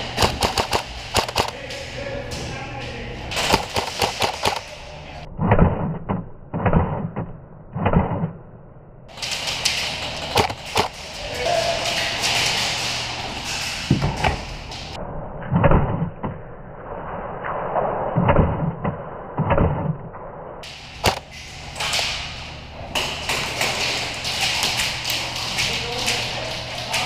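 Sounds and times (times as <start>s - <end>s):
steady background noise: 0.0s - 27.0s
sharp crack: 0.1s - 1.8s, 3.3s - 4.8s.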